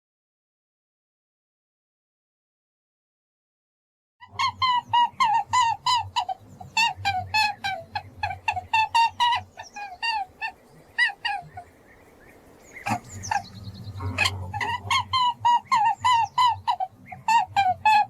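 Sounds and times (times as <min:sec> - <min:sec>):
rabbit squeaking: 0:12.8 - 0:18.0.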